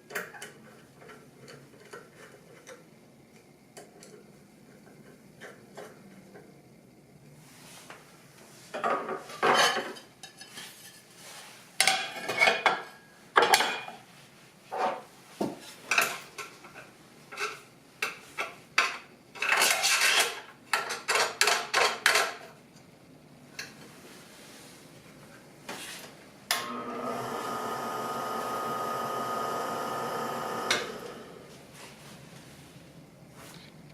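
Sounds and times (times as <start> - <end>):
metal parts clattering and scraping: 19.4 - 22.4
slicer motor humming: 26.5 - 31.5.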